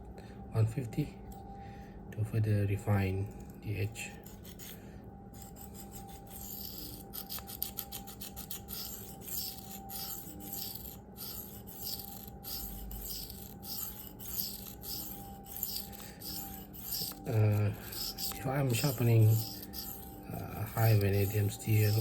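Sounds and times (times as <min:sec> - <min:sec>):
knife scraping on sharpening stone: 0:04.2 - 0:04.8, 0:05.4 - 0:22.0.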